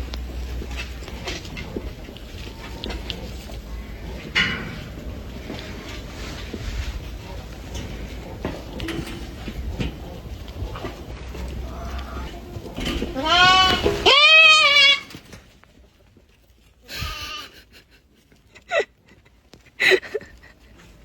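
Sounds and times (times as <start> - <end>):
goat bleating: 13.0 - 15.2, 16.9 - 17.6.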